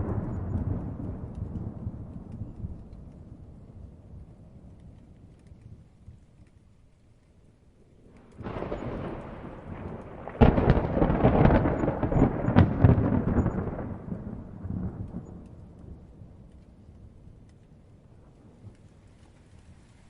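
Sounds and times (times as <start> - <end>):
loud thunder crack: 0.0 - 2.8, 8.4 - 16.1
thunder rumble: 0.0 - 6.9, 7.6 - 20.0.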